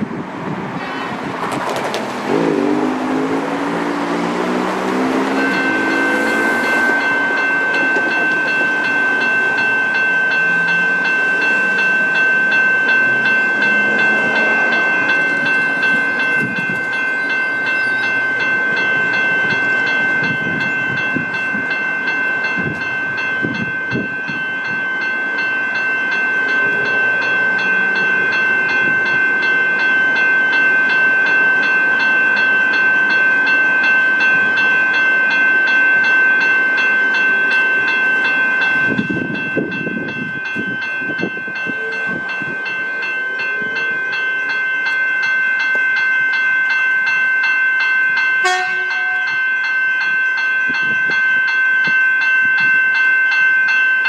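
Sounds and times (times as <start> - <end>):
train wheels clattering over rail joints: 1.3 - 3.0
level crossing warning bell: 2.2 - 54.0.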